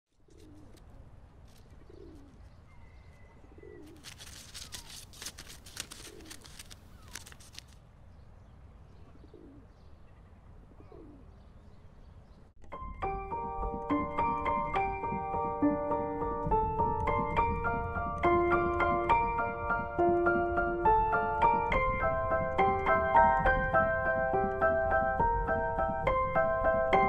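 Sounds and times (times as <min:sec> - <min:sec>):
pigeons cooing: 0:01.8 - 0:04.0, 0:09.1 - 0:09.7, 0:10.8 - 0:11.4
sharp clicks: 0:04.0 - 0:07.8, 0:16.4 - 0:23.6.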